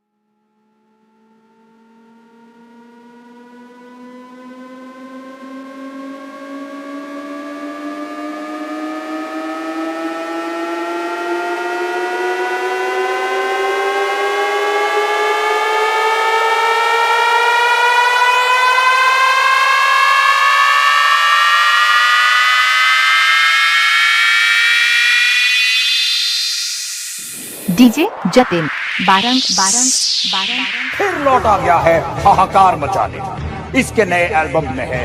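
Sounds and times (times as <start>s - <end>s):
rising electronic tones: 16.0s - 33.4s.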